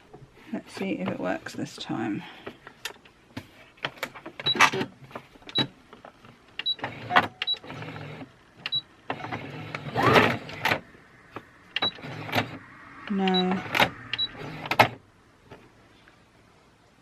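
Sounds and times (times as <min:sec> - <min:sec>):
short high beeps: 0:13.3 - 0:14.4.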